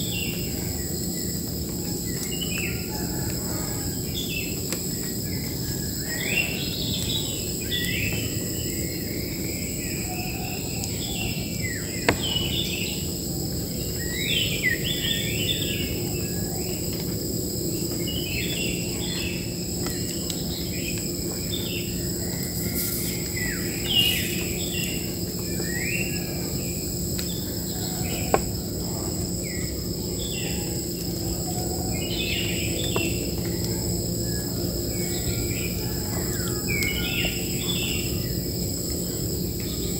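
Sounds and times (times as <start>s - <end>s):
insect drone: 0.0s - 39.9s
birds chirping and singing: 20.4s - 26.4s, 27.3s - 38.4s.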